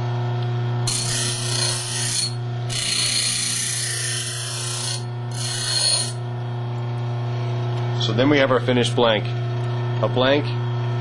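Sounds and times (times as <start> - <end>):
bench grinder motor running: 0.7 - 11.0
steel grinding on stone: 0.9 - 6.2.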